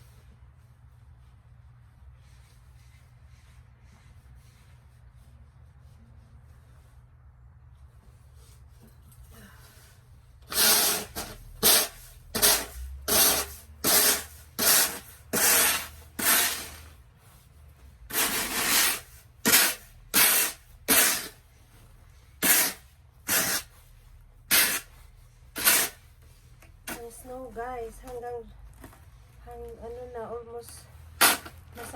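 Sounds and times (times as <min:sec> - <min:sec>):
snow and ice being scraped: 0:10.5 - 0:16.9, 0:18.1 - 0:21.4, 0:22.4 - 0:23.8, 0:24.5 - 0:26.0.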